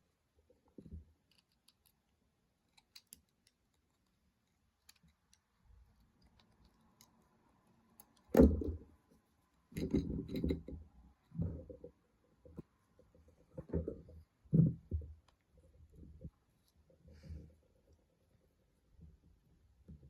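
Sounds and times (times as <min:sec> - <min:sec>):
plastic parts clicking and tapping: 0:00.7 - 0:07.2.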